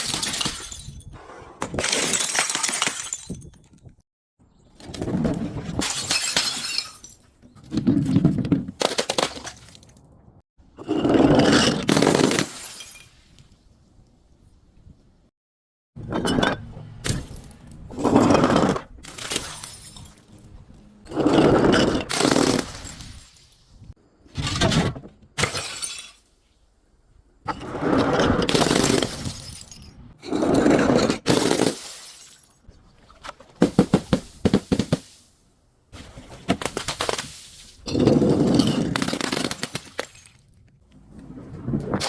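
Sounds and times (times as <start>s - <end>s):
glass bottles shattering: 0.0s - 1.1s, 1.7s - 3.8s, 5.8s - 7.3s, 11.4s - 13.2s, 19.0s - 20.3s, 21.2s - 23.6s, 25.4s - 26.3s, 28.5s - 30.1s, 31.2s - 32.6s, 36.8s - 40.5s.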